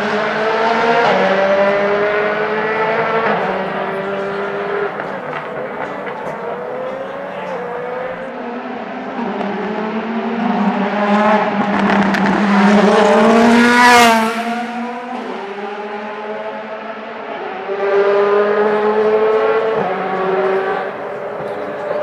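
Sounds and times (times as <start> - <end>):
race cars passing by: 0.0 - 8.3, 11.4 - 15.7, 17.7 - 22.0.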